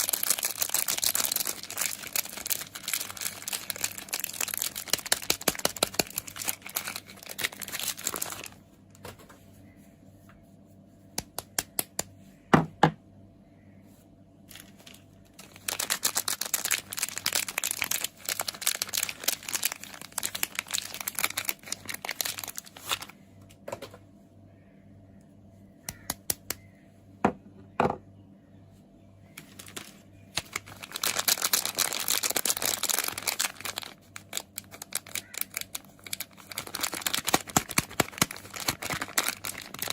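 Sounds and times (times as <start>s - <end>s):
wrapper crinkling and tearing: 0.0s - 8.6s, 14.5s - 23.2s, 29.4s - 39.9s.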